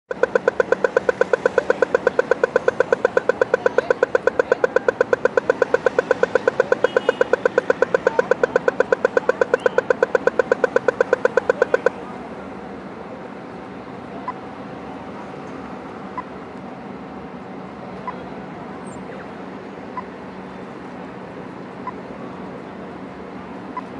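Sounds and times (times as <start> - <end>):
background traffic hum: 0.0 - 23.9
crossing signal beeping rapidly: 0.1 - 11.9.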